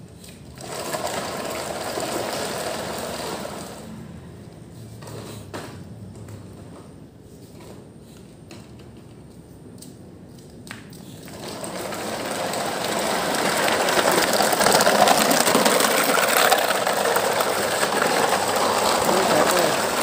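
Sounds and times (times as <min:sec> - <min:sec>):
toy trucks rolling: 0:00.2 - 0:04.1, 0:10.5 - 0:20.0.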